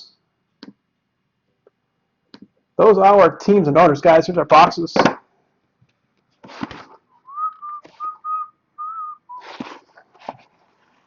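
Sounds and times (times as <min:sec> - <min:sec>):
person whistling a tune: 0:07.2 - 0:09.5
rustling: 0:09.3 - 0:11.0.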